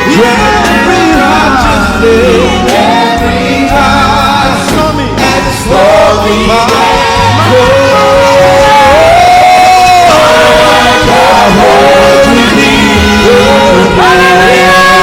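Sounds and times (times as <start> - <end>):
instrumental accompaniment: 0.0 - 15.0
voices singing worship: 0.0 - 15.0.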